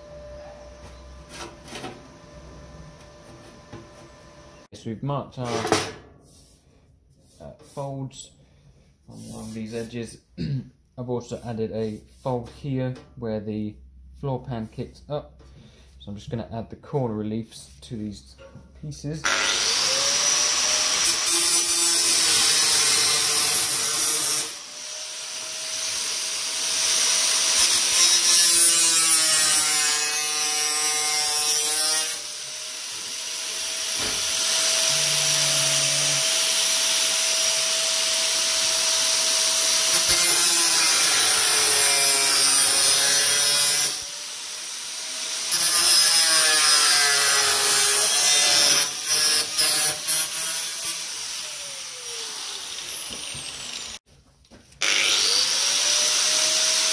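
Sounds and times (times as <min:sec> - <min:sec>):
power tool cutting sheet steel: 0:19.2 - 0:54.0, 0:54.8 - 0:56.9.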